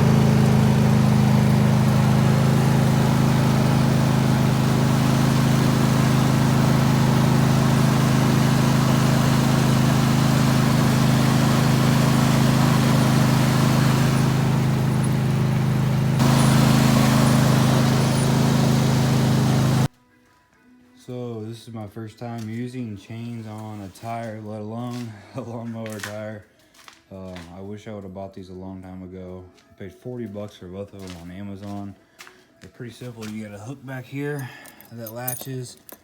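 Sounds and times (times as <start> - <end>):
lawn mower engine running: 0.0 - 19.9.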